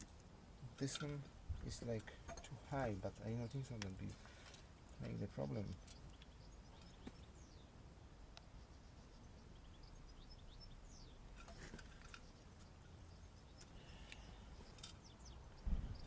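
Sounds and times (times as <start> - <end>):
high bird chirps: 4.9 - 7.8, 8.4 - 16.0
handling rustle: 11.3 - 13.0.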